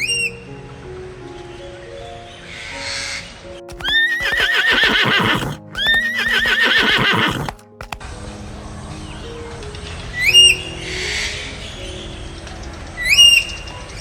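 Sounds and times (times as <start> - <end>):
soft background music: 0.0 - 14.0
horse whinnying: 3.6 - 8.0.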